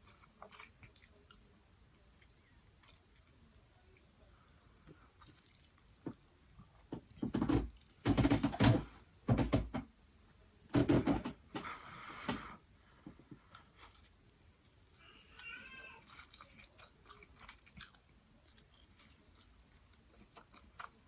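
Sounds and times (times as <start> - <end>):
slurping and chewing noodles: 2.2 - 6.7, 13.7 - 21.0.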